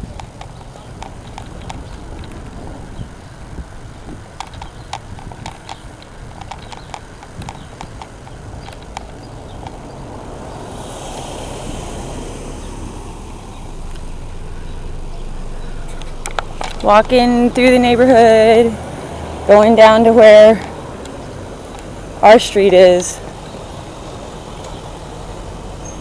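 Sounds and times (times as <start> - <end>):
footsteps on hard ground: 0.0 - 10.6
hissing noise: 10.6 - 17.0.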